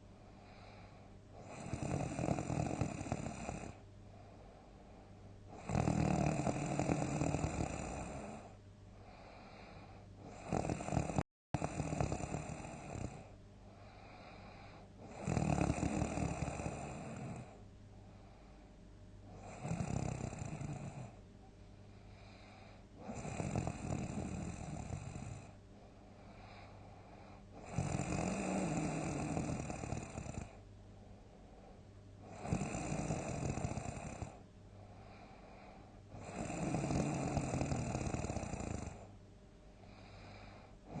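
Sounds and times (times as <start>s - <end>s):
person snoring loudly: 1.4s - 3.8s, 5.5s - 8.5s, 9.3s - 13.3s, 15.0s - 17.6s, 19.3s - 21.2s, 23.0s - 25.5s, 27.6s - 30.6s, 32.3s - 34.4s, 36.1s - 39.1s, 40.2s - 41.0s.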